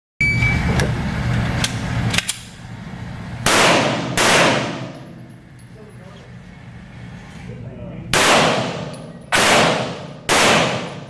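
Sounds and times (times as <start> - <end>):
pistol shots echoing: 3.4 - 5.0, 8.1 - 11.0.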